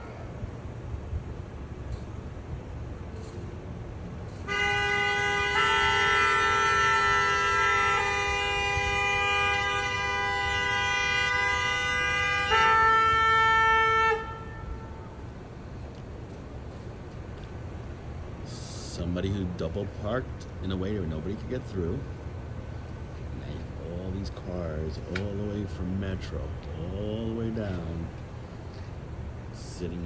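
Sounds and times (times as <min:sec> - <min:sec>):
idling traffic rumble: 0:00.0 - 0:30.0
car horns honking: 0:04.3 - 0:15.4.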